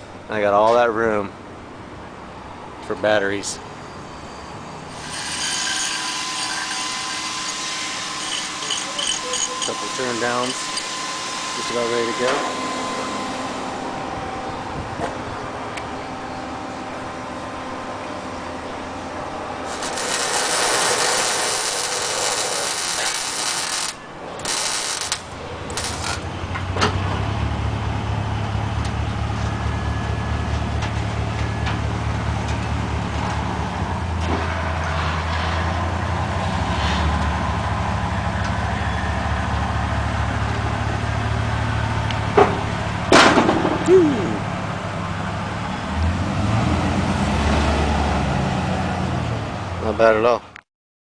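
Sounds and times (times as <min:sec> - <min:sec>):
engine exhaust idling: 0:37.2 - 0:46.0.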